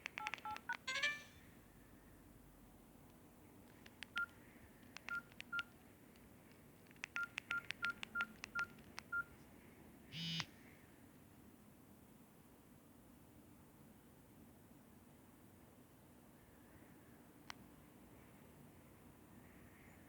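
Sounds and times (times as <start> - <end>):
phone key clicks: 0.0 - 1.2, 3.6 - 9.2
short keypad beeps: 0.1 - 1.3, 5.1 - 5.7, 7.2 - 9.3.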